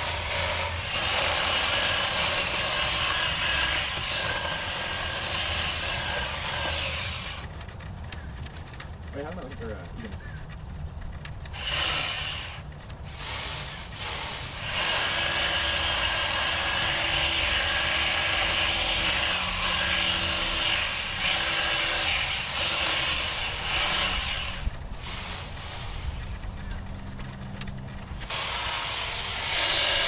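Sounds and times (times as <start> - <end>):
hedge trimmer cutting: 0.0 - 7.5, 11.6 - 26.2, 28.2 - 30.0.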